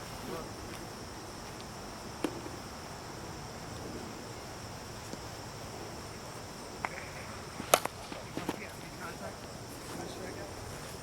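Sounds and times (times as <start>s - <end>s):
crickets trilling: 0.0s - 11.0s.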